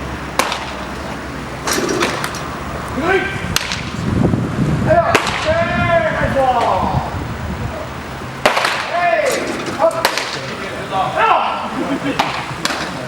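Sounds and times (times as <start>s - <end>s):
baseballs smacking into mitts: 0.3s - 0.9s, 3.5s - 4.0s, 5.1s - 5.5s, 8.4s - 10.6s, 12.2s - 13.0s.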